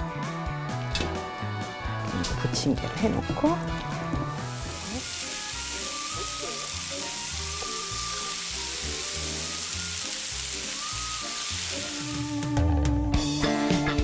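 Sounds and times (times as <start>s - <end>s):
pancake sizzling in oil: 3.6s - 12.6s.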